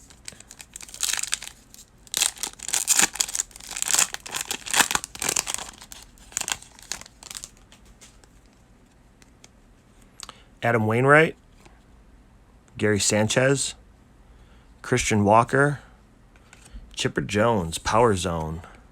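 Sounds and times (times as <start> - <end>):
wrapper crinkling and tearing: 0.0 - 8.2.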